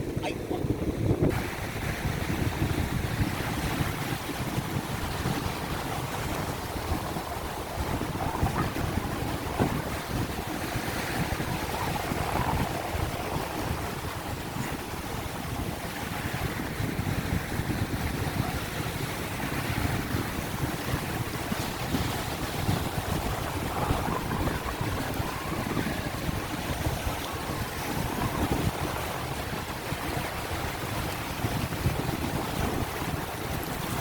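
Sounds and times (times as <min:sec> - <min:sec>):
sea waves washing: 0:00.0 - 0:34.0
wind buffeting microphone: 0:00.0 - 0:34.0.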